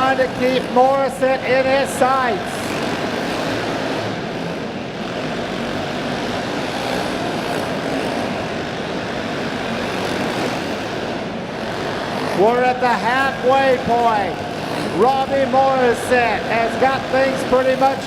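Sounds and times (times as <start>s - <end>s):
kart engines buzzing: 0.0s - 18.0s.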